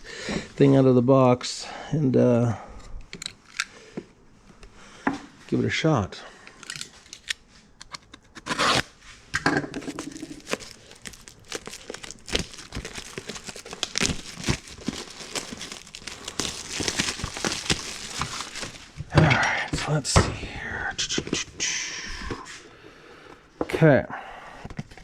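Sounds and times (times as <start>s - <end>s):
small handling clicks: 3.1s - 3.7s
packaging crinkling and tearing: 8.3s - 8.9s, 9.8s - 19.0s.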